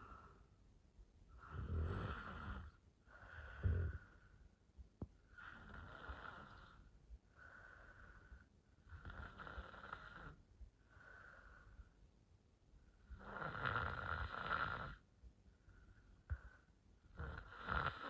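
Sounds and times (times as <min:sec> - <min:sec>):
woman snoring: 0:01.4 - 0:02.8, 0:03.5 - 0:04.0, 0:13.2 - 0:15.0, 0:17.2 - 0:18.0.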